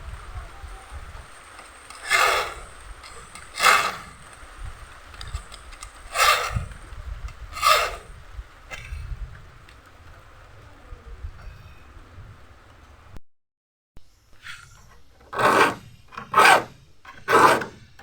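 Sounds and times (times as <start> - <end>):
file sharpening saw teeth: 1.9 - 4.3, 5.2 - 6.8, 7.6 - 8.1, 15.3 - 17.8.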